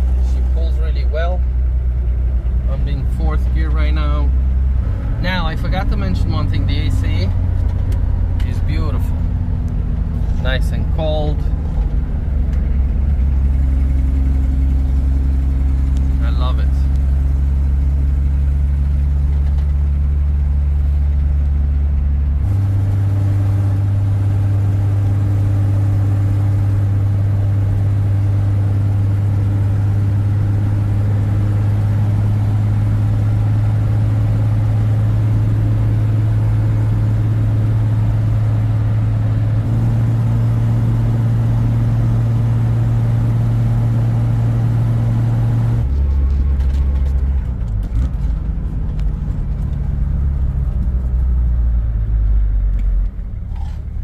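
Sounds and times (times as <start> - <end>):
diesel engine droning in cabin: 0.0 - 54.0.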